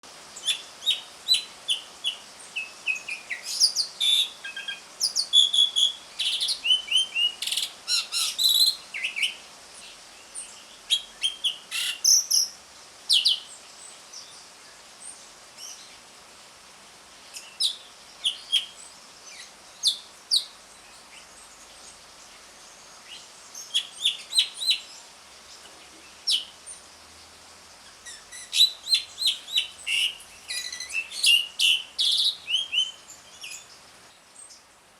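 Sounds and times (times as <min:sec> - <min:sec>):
starling chirping and whistling: 0:00.4 - 0:09.4, 0:10.9 - 0:13.5, 0:23.1 - 0:24.9, 0:26.2 - 0:26.6, 0:28.0 - 0:33.7.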